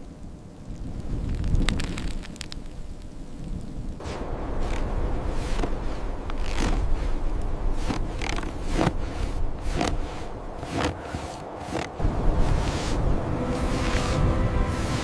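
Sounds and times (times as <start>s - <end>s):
steady low rumble: 3.8s - 15.0s
short scraping crunching noises: 4.0s - 15.0s.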